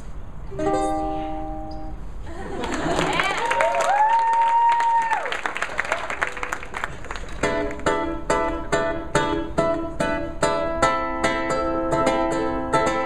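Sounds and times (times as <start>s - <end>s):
strummed acoustic string instrument: 7.3s - 13.0s.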